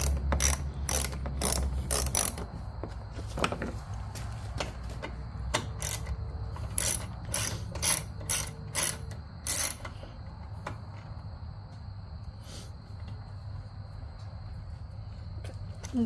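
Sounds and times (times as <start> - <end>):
ratchet wrench clicking: 0.0 - 2.5, 5.5 - 10.0.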